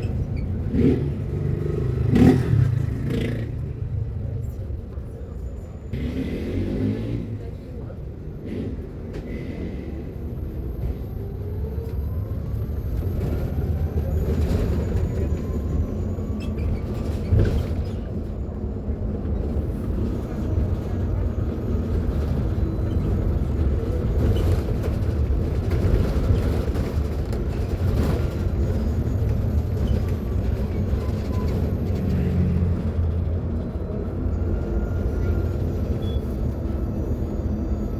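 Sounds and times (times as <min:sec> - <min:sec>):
low road rumble: 0:00.0 - 0:37.9
bus body knocks and rattles: 0:16.4 - 0:18.4.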